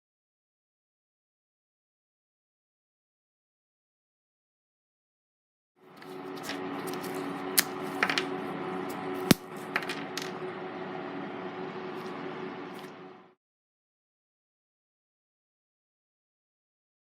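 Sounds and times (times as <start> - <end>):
steady hum: 5.8 - 13.4.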